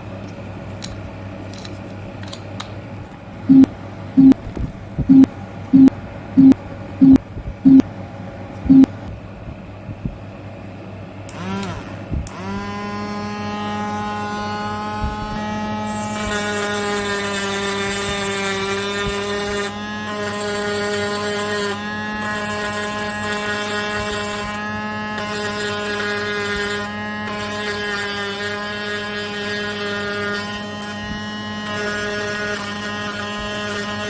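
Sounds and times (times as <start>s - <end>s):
small electric motor whining: 11.3s - 34.0s.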